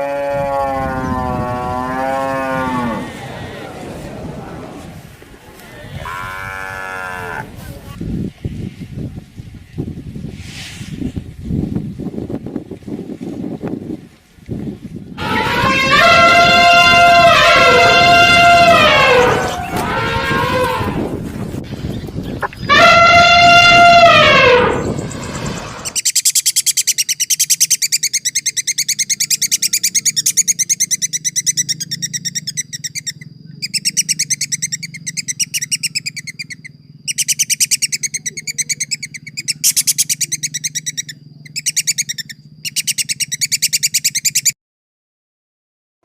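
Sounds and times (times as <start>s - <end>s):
animal call rising and falling: 0.0s - 7.5s, 15.2s - 21.1s, 22.5s - 26.0s
bird chirping rapidly: 21.8s - 44.6s.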